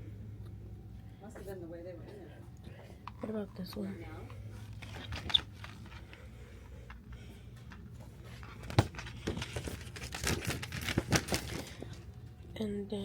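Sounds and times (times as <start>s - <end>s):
steady low hum: 0.0s - 13.0s
gift bags rustling: 4.4s - 6.4s, 8.2s - 12.2s.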